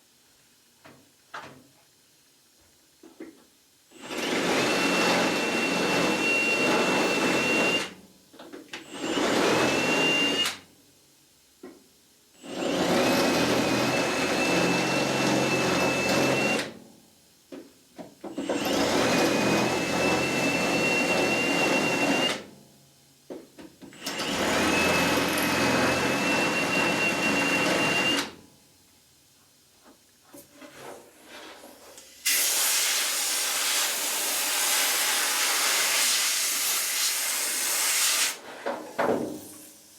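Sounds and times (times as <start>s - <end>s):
metalworking tool high whine: 4.0s - 7.9s, 8.9s - 10.4s, 12.4s - 16.6s, 18.5s - 22.4s, 24.1s - 28.4s
steady hiss: 31.1s - 38.4s.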